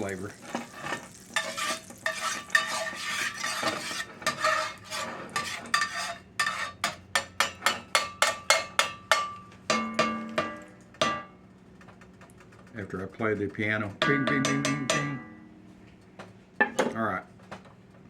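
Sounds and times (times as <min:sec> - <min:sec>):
metal utensil scraping cookware: 0:00.4 - 0:11.3
utensil tapping metal rim: 0:14.0 - 0:15.4.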